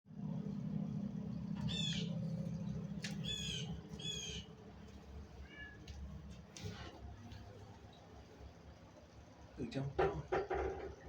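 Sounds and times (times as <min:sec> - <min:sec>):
steady low hum: 0:00.1 - 0:10.0
high-pitched animal calls: 0:01.6 - 0:02.1, 0:03.2 - 0:04.5.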